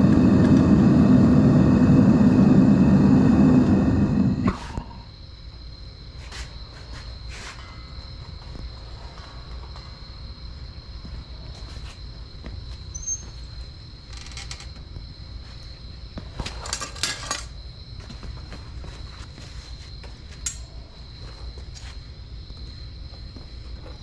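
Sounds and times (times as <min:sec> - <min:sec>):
low background rumble: 0:00.0 - 0:06.0
crickets trilling: 0:00.0 - 0:24.0.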